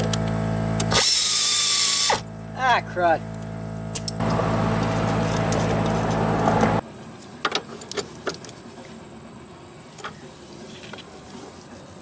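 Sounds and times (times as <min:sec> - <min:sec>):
machine running steadily: 0:00.0 - 0:07.6.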